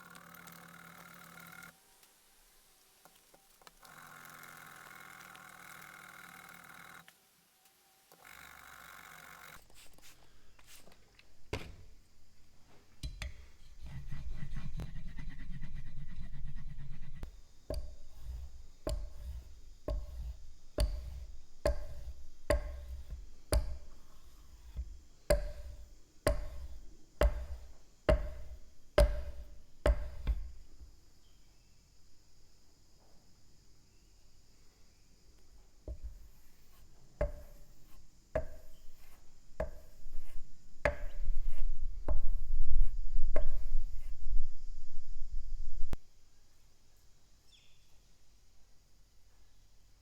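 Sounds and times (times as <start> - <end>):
hammer blows on wood: 17.7 - 24.0, 24.7 - 30.6.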